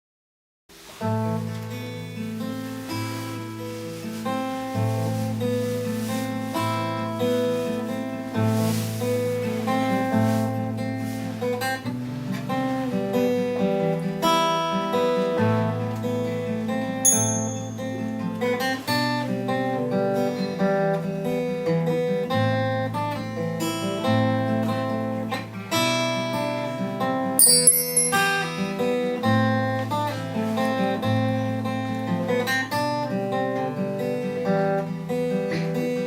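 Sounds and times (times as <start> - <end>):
strummed acoustic guitar: 0.7 - 36.0
high metallic percussion ring: 17.1 - 18.2, 27.4 - 29.0.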